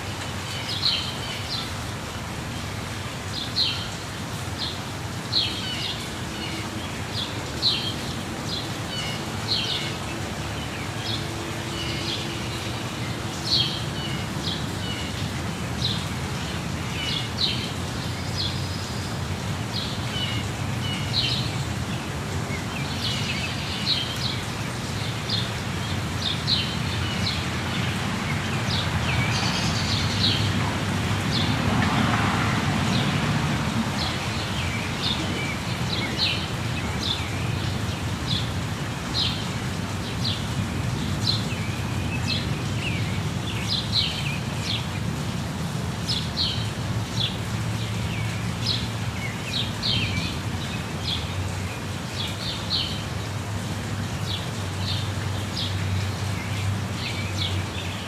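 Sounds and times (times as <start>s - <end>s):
waterfall rushing: 0.0s - 58.0s
birds chirping: 3.2s - 45.0s.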